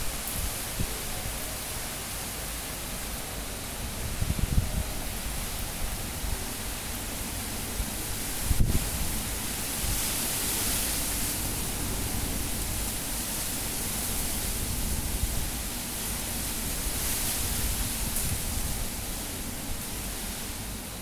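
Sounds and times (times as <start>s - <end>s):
strong wind rushing: 7.9s - 16.0s.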